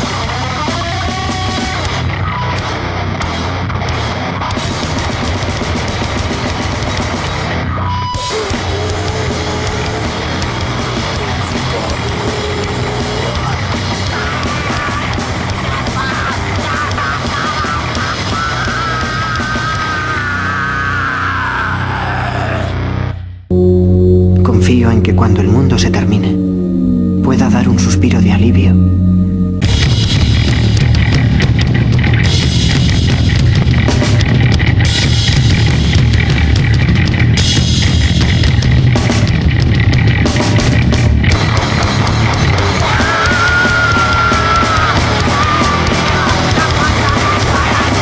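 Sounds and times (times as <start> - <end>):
grindcore music: 0.0 - 48.0
wavering high-pitched tones: 23.5 - 29.6.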